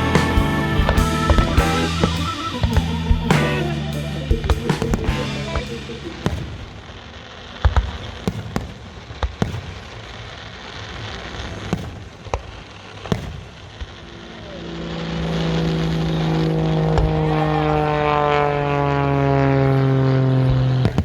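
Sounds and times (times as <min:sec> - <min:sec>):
steady low drone: 0:00.0 - 0:06.9
fireworks bangs and pops: 0:07.6 - 0:14.0.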